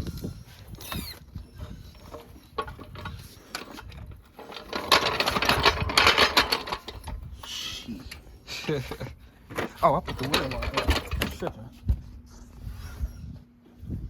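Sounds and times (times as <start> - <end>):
rapid mechanical rattling: 2.0 - 7.2, 8.6 - 11.6
metal clicks and knocks: 2.6 - 7.2, 9.5 - 11.5.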